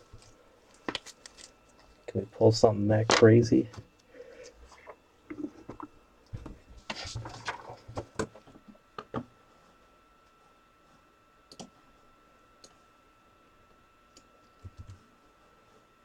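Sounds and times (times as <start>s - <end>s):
rustling handling noises: 0.0s - 2.2s, 3.7s - 8.6s
faint high whine: 0.0s - 7.8s.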